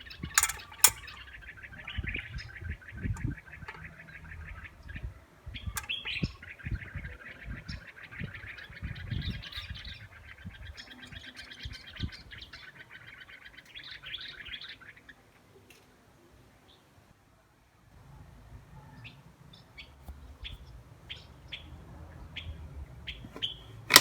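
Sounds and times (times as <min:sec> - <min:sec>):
songbird singing trilled chirps: 0:00.0 - 0:15.3.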